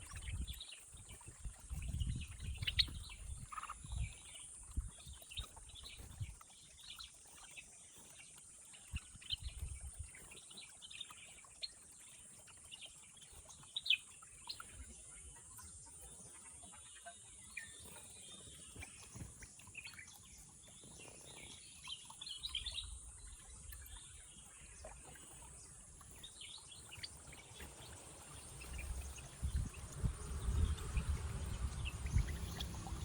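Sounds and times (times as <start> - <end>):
small birds chirping: 0.0 - 33.0
low rumbles: 28.7 - 33.0.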